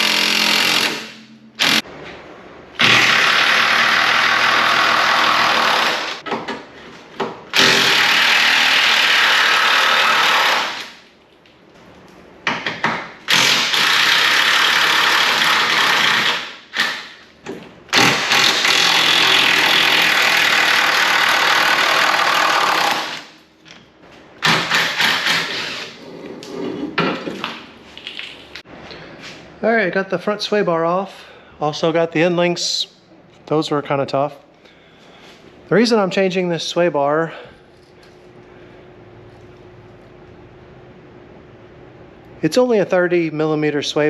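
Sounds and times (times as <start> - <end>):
impact wrench hammering: 24.4 - 25.7.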